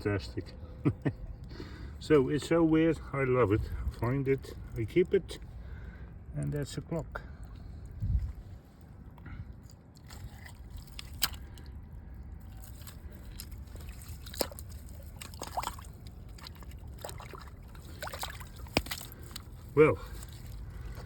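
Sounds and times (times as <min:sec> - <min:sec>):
shallow water sloshing: 0:07.1 - 0:21.0.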